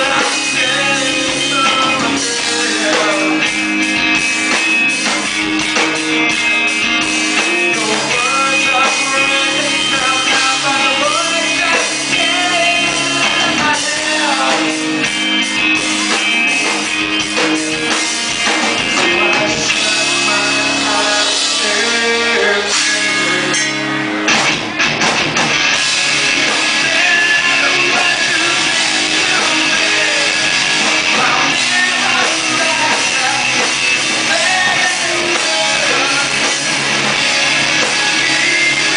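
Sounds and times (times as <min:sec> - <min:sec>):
person singing: 0:00.0 - 0:03.6, 0:07.4 - 0:15.1, 0:17.4 - 0:24.2, 0:26.5 - 0:38.9
bass guitar: 0:00.0 - 0:38.9
distorted electric guitars: 0:00.0 - 0:38.9
drums: 0:00.0 - 0:38.9.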